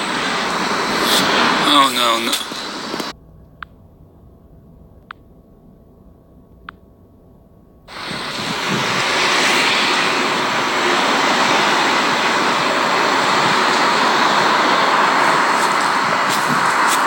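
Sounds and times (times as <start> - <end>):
loud steady rushing noise: 0.0 - 3.2, 7.9 - 17.0
low hum: 0.0 - 17.0.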